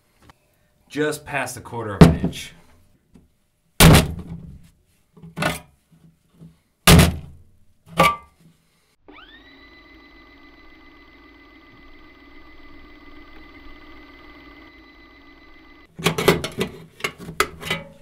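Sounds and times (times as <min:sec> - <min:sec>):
faint electronic hum: 0:09.1 - 0:15.9.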